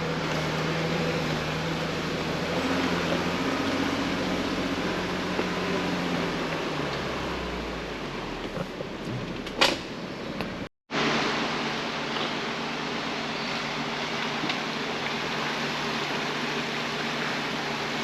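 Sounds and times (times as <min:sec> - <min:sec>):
road and engine noise in car: 0:00.0 - 0:18.0.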